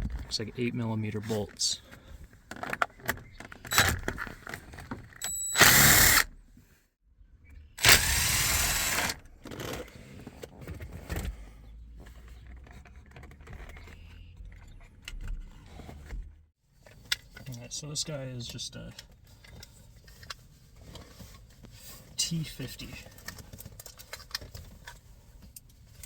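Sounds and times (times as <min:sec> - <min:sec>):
power socket tool bursts: 0:05.3 - 0:06.3, 0:07.8 - 0:09.2.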